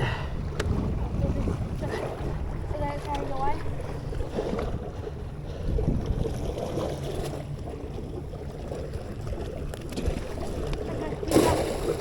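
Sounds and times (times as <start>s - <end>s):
wind rumbling on microphone: 0.0s - 12.0s.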